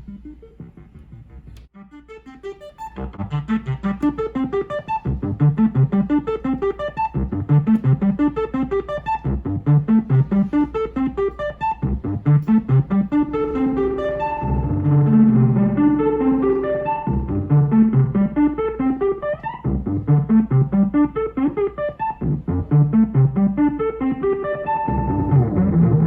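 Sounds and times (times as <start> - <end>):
piano-like keyboard music: 0.0 - 26.0
low bass note: 11.8 - 18.2.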